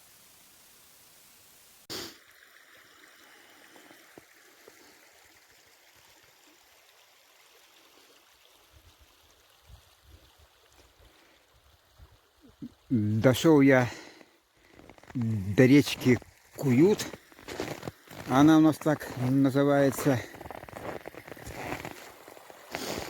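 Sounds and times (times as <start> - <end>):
small river flowing: 0.0 - 23.0.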